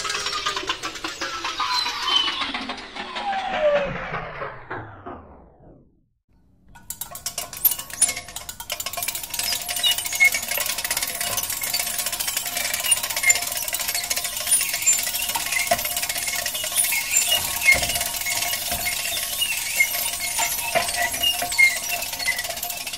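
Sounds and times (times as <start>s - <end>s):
metal rattling clicks: 6.7s - 22.9s
high metal squeaks: 7.0s - 22.9s.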